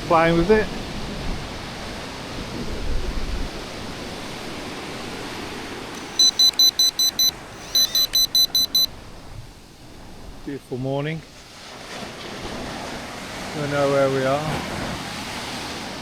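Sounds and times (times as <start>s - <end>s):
wind: 0.0s - 16.0s
high electronic beeps: 6.0s - 8.9s
surf: 9.8s - 16.0s.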